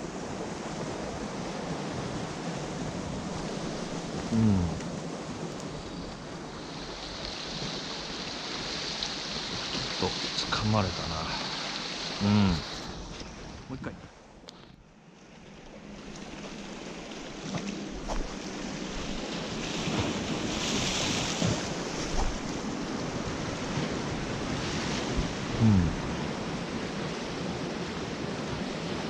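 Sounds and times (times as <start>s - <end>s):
waves surging on rocky shore: 0.0s - 14.0s, 15.8s - 29.0s.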